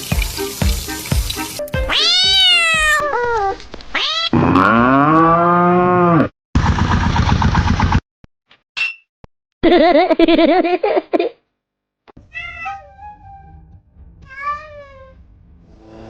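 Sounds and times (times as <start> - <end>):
music with a beat: 0.0 - 1.9
cat meowing: 1.8 - 4.3, 12.3 - 13.6, 14.2 - 15.2.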